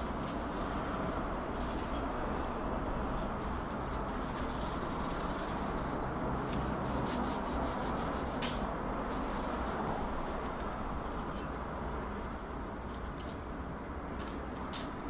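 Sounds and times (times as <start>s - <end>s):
tissue rubbing on computer part: 0.0s - 10.4s.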